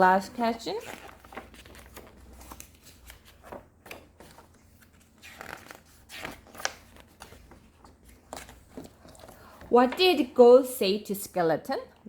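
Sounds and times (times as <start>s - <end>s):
book pages rustling: 0.2s - 10.2s.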